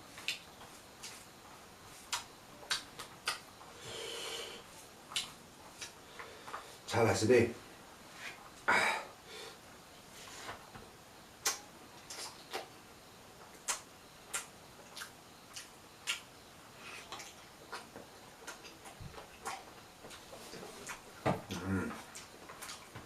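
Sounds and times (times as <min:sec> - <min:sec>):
person chewing: 0:11.4 - 0:12.7, 0:13.5 - 0:16.2, 0:16.8 - 0:22.9.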